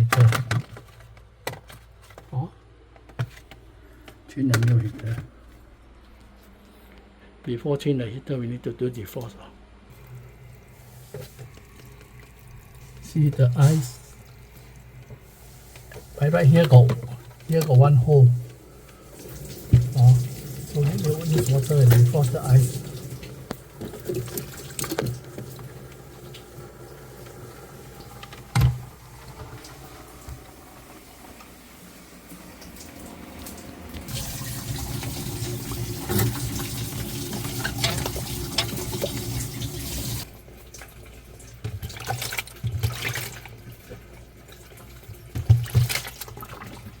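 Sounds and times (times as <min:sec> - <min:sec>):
water running into drain hole: 0:09.9 - 0:47.0.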